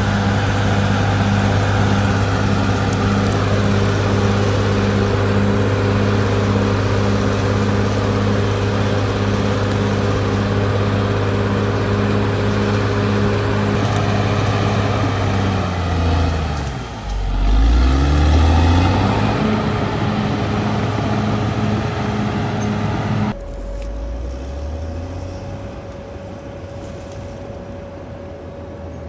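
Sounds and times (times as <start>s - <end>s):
bulldozer diesel engine under load: 0.0s - 26.9s.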